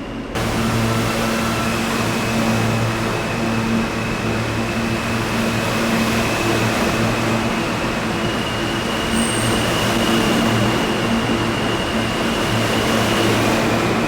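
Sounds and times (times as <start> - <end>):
subway train rumbling: 0.0 - 14.0
high steady whine: 0.4 - 14.0.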